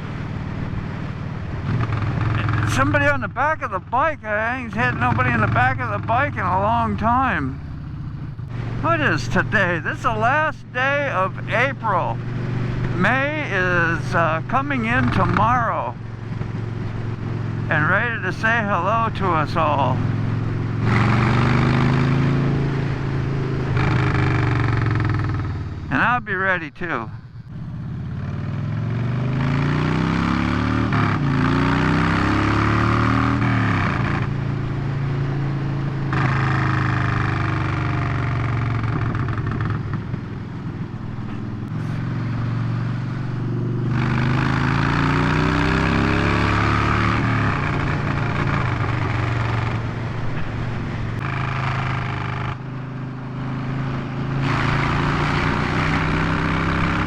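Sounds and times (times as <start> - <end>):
motorcycle engine pulling through gears: 23.7 - 25.8, 35.6 - 57.0.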